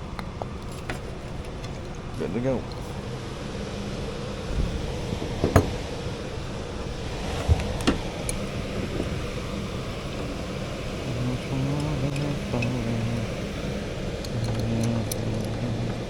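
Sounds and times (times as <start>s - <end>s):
steady mechanical hum: 0.0s - 16.0s
dull knock: 5.3s - 5.8s.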